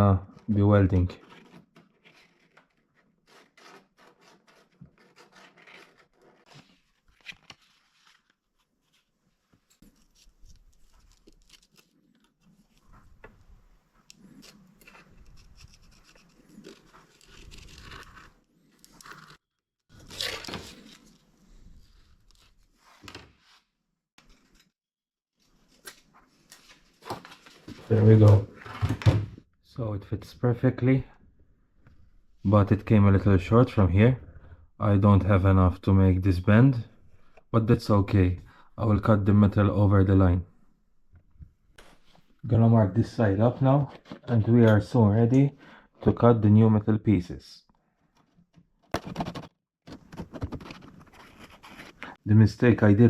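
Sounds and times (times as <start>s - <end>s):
cardboard scraping and tearing: 1.2s - 8.3s, 14.2s - 21.2s, 49.0s - 52.2s.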